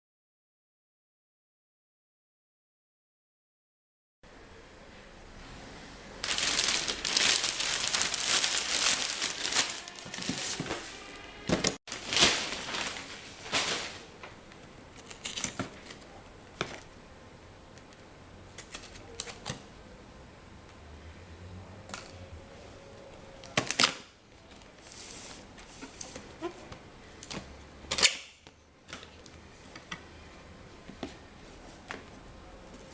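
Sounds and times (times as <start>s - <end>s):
packaging crinkling: 6.2s - 14.1s.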